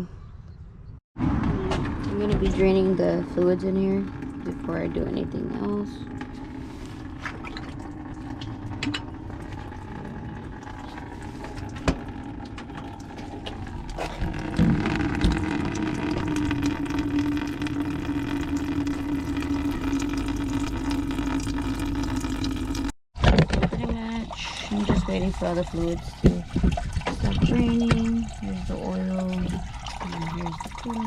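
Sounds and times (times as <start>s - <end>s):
fluid pouring into a pan: 12.4s - 22.9s.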